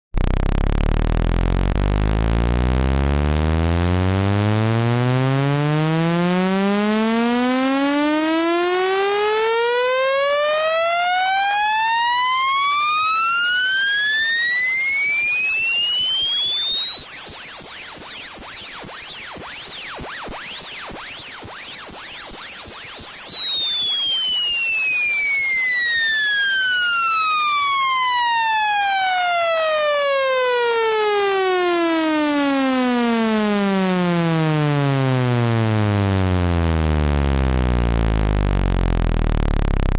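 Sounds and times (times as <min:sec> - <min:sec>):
buzzy tone gliding upward: 0:00.2 - 0:07.8, 0:14.6 - 0:27.0.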